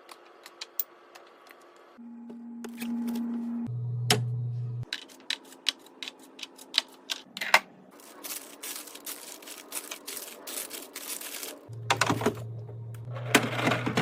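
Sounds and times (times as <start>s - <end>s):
low steady hum: 2.0s - 4.9s, 11.3s - 14.0s
food packages clicking and knocking: 4.8s - 12.5s
packages clattering and rustling: 8.0s - 12.4s.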